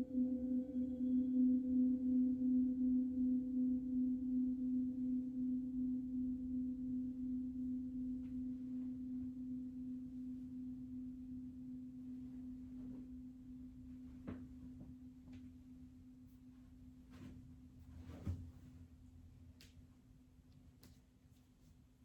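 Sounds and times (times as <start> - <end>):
metal percussion ringing tone: 0.0 - 7.9.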